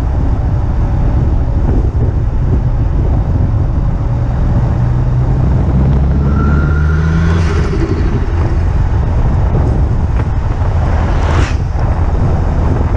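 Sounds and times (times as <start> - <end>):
road and wind noise: 0.0 - 12.9
car engine pulling under load: 0.2 - 12.9
turbo whistle: 6.1 - 8.6.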